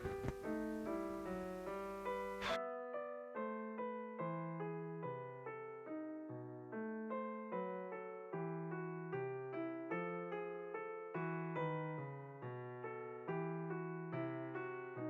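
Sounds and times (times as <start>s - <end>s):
gentle piano melody: 0.0s - 15.0s.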